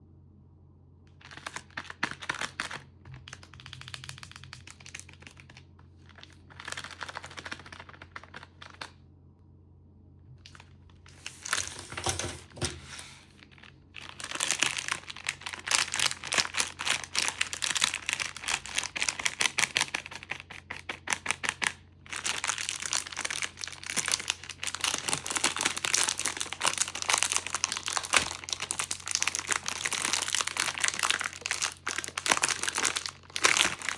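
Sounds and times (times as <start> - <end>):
plastic packaging crinkling: 1.2 - 8.9, 10.4 - 33.9.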